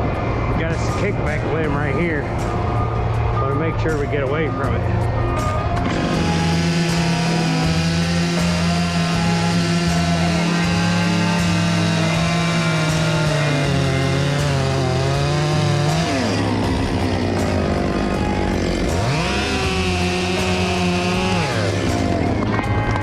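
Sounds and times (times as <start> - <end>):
chainsaw cutting: 5.8 - 23.0.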